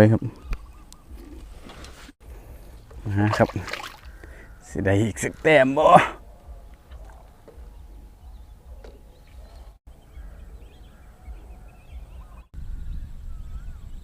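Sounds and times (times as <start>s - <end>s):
faint bird chirps: 6.2s - 14.0s
wind rumble on microphone: 6.2s - 14.0s.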